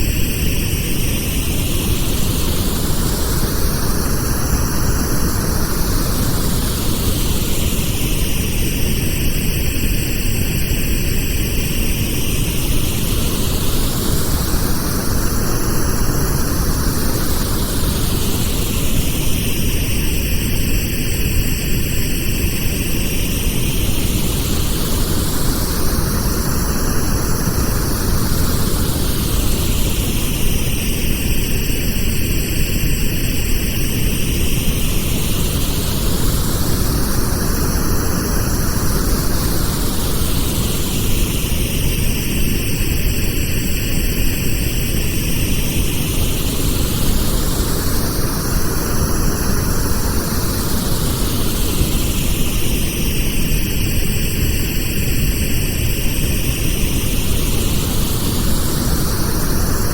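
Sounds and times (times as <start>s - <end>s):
pink noise hiss with whooshing sweep: 0.0s - 59.9s.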